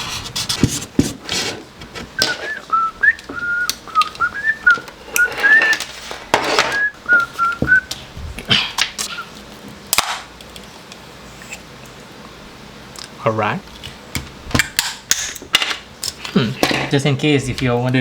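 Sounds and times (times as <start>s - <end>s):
person whistling a tune: 2.2s - 5.9s, 6.7s - 7.9s.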